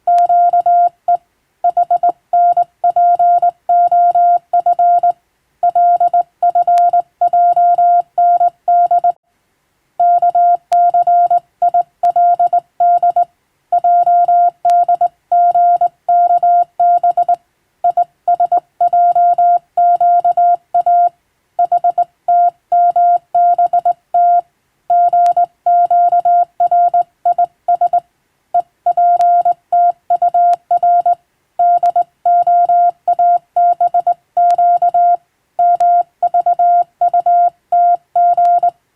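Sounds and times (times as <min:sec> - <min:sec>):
morse code beeps: 0:00.1 - 0:09.2, 0:10.0 - 0:28.0, 0:28.6 - 0:38.8.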